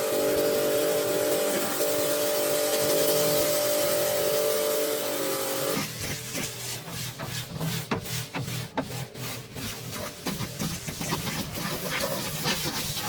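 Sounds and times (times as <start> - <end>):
hand scraping strokes: 5.8 - 13.0.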